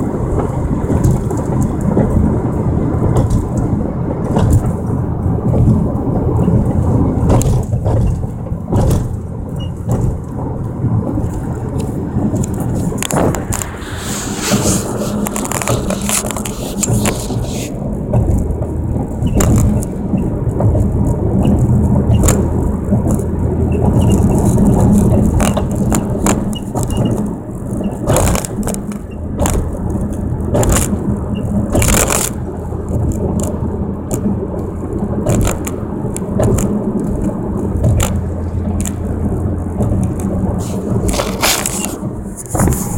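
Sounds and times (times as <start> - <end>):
car engine and road noise: 0.0 - 42.9.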